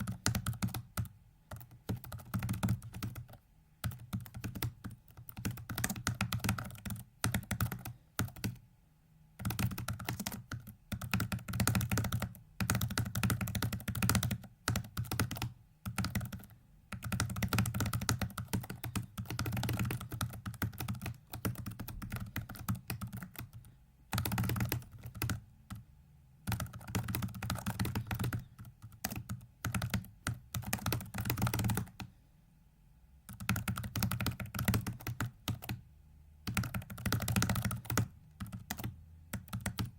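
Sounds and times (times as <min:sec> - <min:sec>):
rapid keyboard typing: 0:00.0 - 0:08.6, 0:09.4 - 0:25.8, 0:26.4 - 0:32.1, 0:33.3 - 0:35.8, 0:36.4 - 0:39.9.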